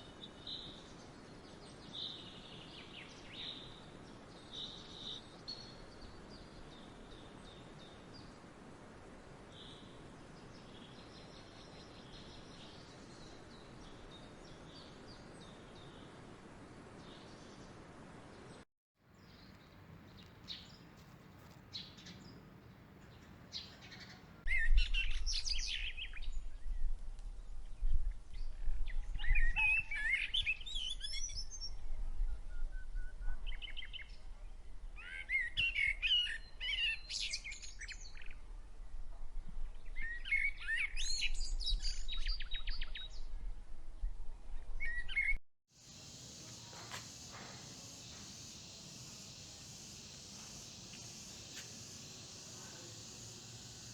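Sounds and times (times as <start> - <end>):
songbirds chirping and trilling: 19.2 - 24.6, 45.9 - 53.9
steady hiss: 45.8 - 53.9.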